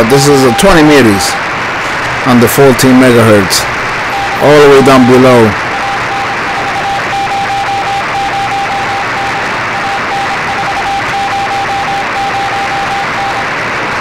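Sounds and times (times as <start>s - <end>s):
morse code tone: 0.0s - 1.4s, 4.1s - 13.5s
radio band hiss: 0.0s - 14.0s.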